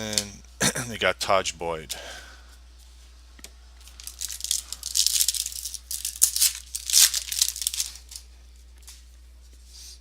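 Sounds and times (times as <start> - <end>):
foil wrapper crinkling: 3.8 - 8.3.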